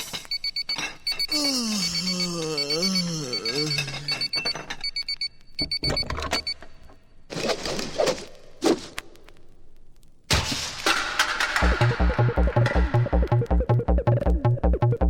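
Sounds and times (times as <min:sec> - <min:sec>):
digital alarm clock beeping: 0:00.3 - 0:06.6.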